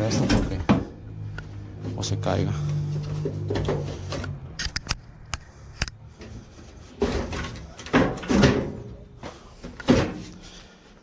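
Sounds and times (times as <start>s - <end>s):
clicks of parts handled: 3.6s - 6.0s.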